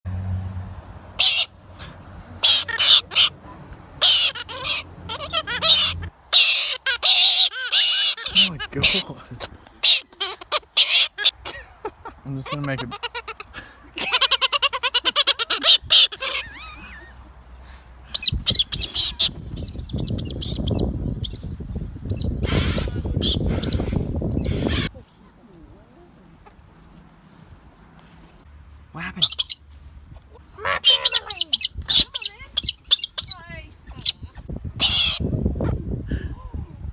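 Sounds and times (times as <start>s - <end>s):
cockatoo screeching: 1.2s - 1.6s, 2.4s - 3.4s, 4.0s - 11.5s, 12.4s - 17.1s, 18.1s - 21.4s, 22.1s - 25.0s, 29.0s - 29.6s, 30.6s - 35.3s
cockatoo wavering chatter: 1.2s - 11.6s, 12.4s - 17.2s, 18.1s - 21.5s, 22.2s - 25.3s, 29.0s - 35.3s.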